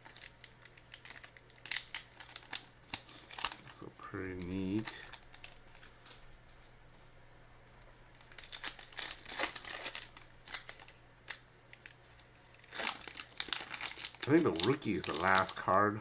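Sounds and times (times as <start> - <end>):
foil wrapper crinkling and tearing: 0.0 - 6.3, 8.1 - 15.8.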